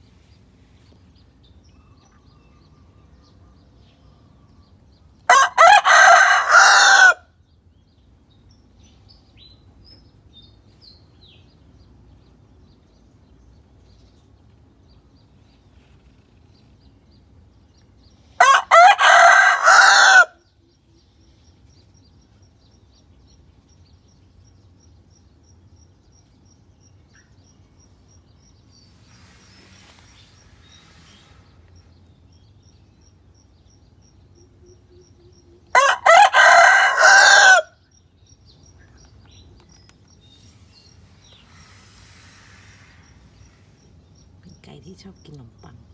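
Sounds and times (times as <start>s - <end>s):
rooster crowing: 5.3s - 7.2s, 18.4s - 20.4s, 35.7s - 37.8s.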